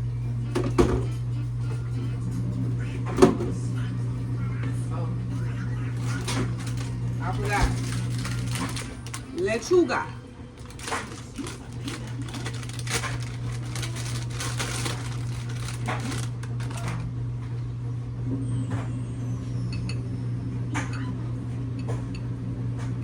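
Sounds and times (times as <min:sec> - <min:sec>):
steady low hum: 0:00.0 - 0:23.0
crisp rustling of lettuce: 0:05.9 - 0:09.9, 0:10.5 - 0:17.1
utensils and dishes clicking: 0:10.6 - 0:17.0.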